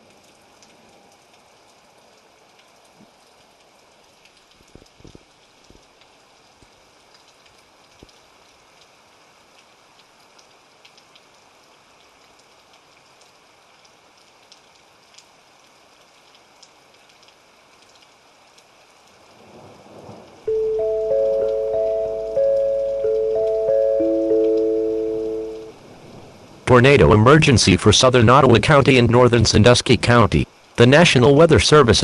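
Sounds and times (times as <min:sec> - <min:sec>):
faint rain hiss: 0:00.0 - 0:32.0
raindrops ticking: 0:09.6 - 0:11.4, 0:16.0 - 0:18.7, 0:20.0 - 0:25.8
loud stepped chime tones: 0:20.5 - 0:25.8.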